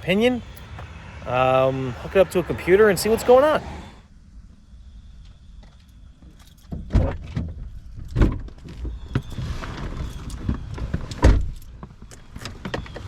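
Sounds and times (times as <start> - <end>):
rustling and small knocks: 5.2 - 13.0.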